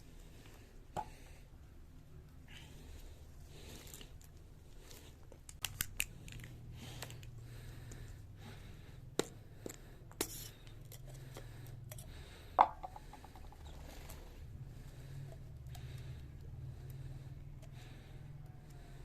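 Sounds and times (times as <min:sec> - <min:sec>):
steady low hum: 0:00.0 - 0:19.0
clicks of parts and tools handled: 0:05.3 - 0:07.4.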